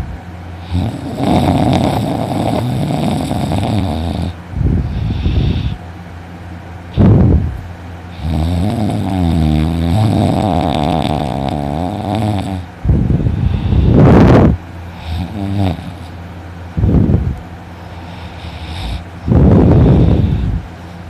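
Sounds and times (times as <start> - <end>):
man snoring: 0.6 - 5.8, 8.1 - 12.7, 13.4 - 16.1, 17.9 - 20.6.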